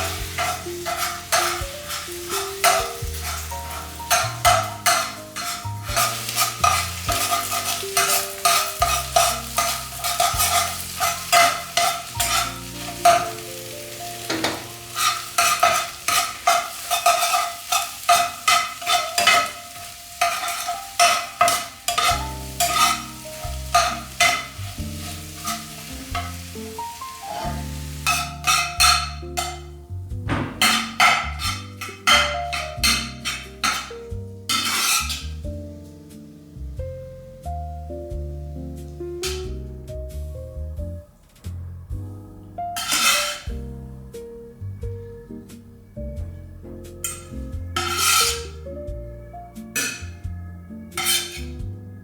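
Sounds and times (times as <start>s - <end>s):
spatula scraping a pan: 0.0s - 35.7s, 39.2s - 40.2s, 42.8s - 43.6s, 47.0s - 48.7s, 49.7s - 50.2s, 50.9s - 51.6s
food sizzling in a frying pan: 0.0s - 40.6s, 42.7s - 44.6s, 46.8s - 49.0s, 49.6s - 51.8s.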